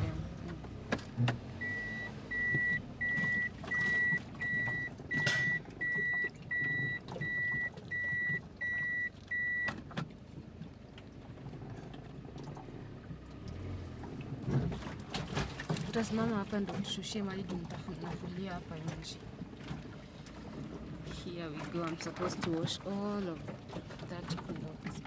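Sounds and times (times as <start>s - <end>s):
low vehicle rumble: 0.0s - 25.0s
vehicle reversing beeper: 1.6s - 9.8s.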